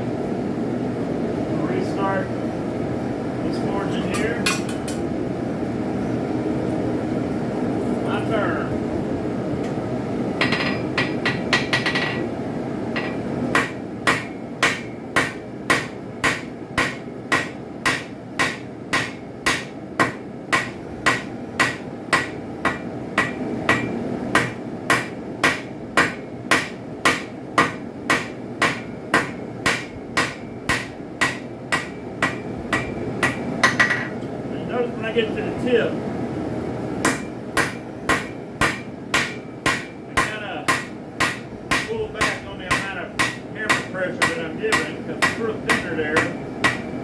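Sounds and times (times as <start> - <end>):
hammer striking metal on anvil: 10.4 - 12.3, 13.0 - 34.2, 37.0 - 47.0.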